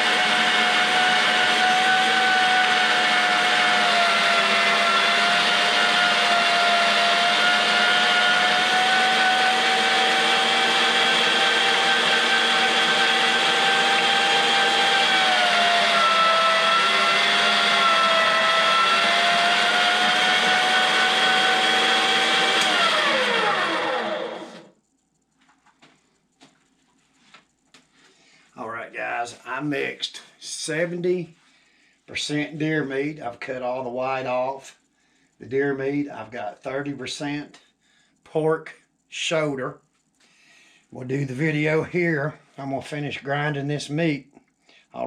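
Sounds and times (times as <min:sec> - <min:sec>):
electric meat grinder whining: 0:00.0 - 0:24.7.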